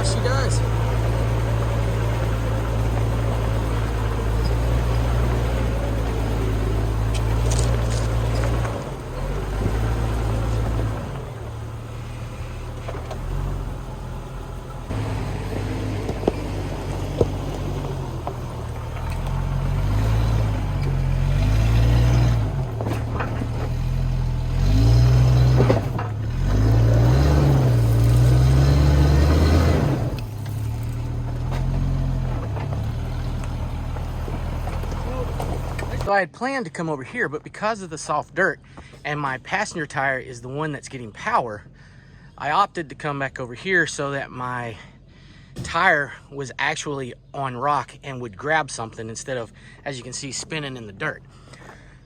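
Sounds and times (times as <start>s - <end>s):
engine revving under load: 0.0s - 36.1s
tire spinning in dirt: 0.0s - 36.1s.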